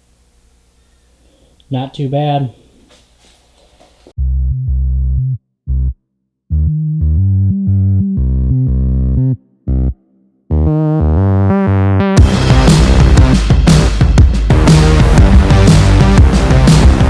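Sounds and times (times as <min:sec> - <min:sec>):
bass-heavy synthesizer riff: 0:04.2 - 0:17.0.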